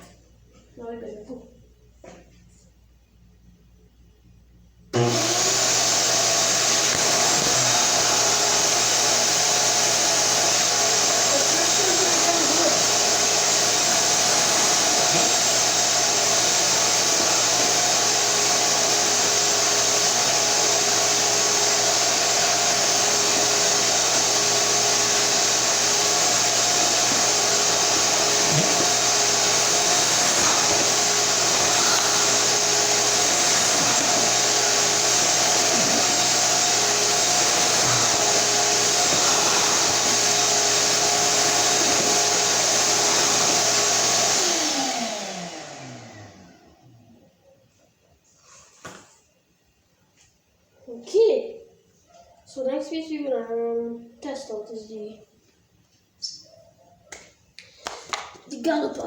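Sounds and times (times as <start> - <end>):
vacuum cleaner running: 4.9 - 47.1.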